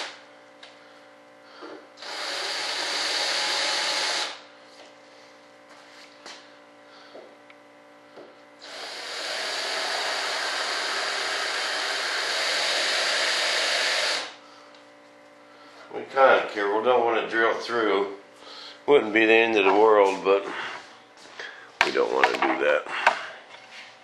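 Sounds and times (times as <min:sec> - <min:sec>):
power drill boring into fiberglass: 0:02.0 - 0:04.4, 0:08.6 - 0:14.3.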